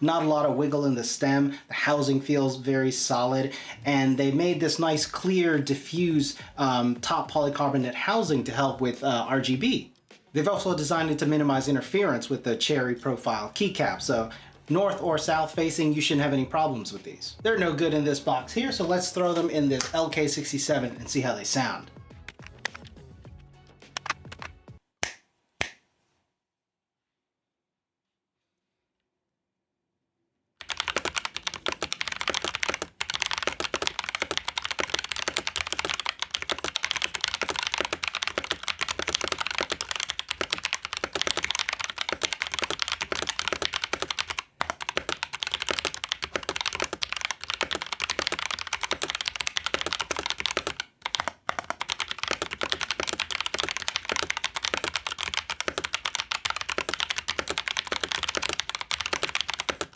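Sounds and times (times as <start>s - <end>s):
typing on mechanical keyboard: 22.2s - 23.1s, 23.9s - 24.6s, 30.6s - 59.9s.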